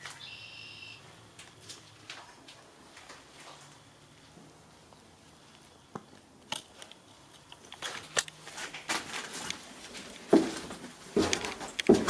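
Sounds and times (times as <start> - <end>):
footsteps crunching over debris: 1.3 - 4.4, 5.4 - 12.0.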